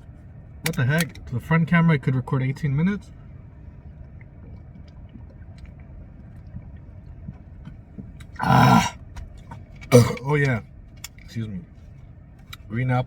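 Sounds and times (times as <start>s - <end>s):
low background rumble: 0.0s - 13.0s
loud burp: 8.4s - 9.0s, 9.9s - 10.3s.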